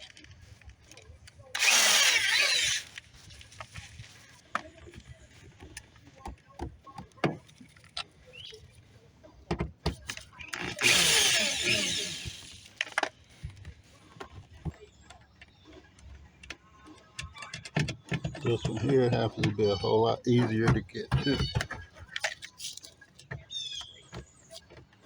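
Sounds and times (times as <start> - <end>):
cordless drill running: 1.6 - 3.5, 10.5 - 13.6.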